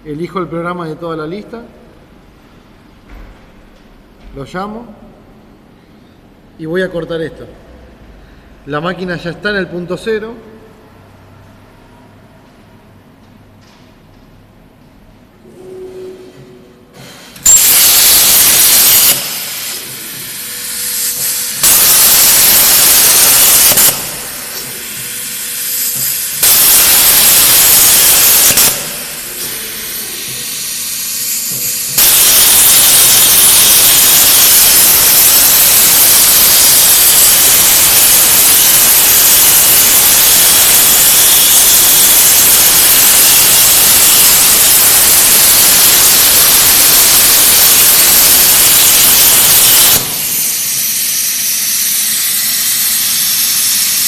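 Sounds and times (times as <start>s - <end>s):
machine with faint steady tone: 14.8s - 54.0s
plasma torch cutting metal: 17.4s - 54.0s.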